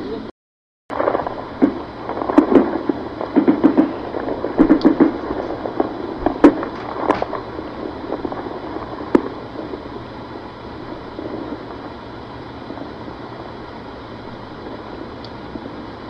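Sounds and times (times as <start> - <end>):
outdoor background noise: 0.0 - 0.3, 0.9 - 16.0
distant gunshot: 0.9 - 10.0
sharp crack: 0.9 - 16.0.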